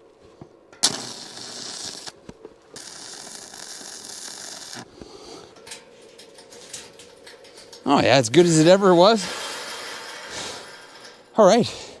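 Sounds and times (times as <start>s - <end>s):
arc welding crackle and hiss: 0.0s - 12.0s.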